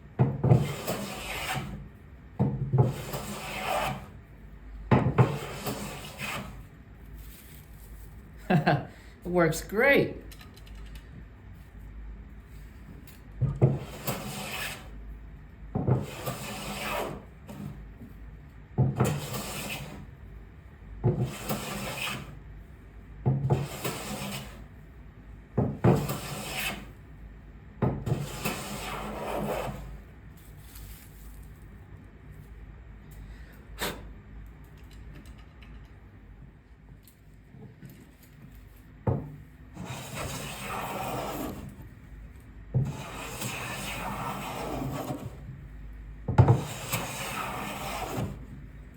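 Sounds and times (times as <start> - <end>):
hand plane swishing along board: 0.4 - 1.9, 2.8 - 4.2, 5.2 - 6.6, 13.6 - 14.9, 15.8 - 17.8, 19.0 - 20.1, 21.1 - 22.4, 23.4 - 24.7, 25.9 - 26.9, 28.0 - 30.0, 39.8 - 41.7, 42.8 - 45.5, 46.5 - 48.5.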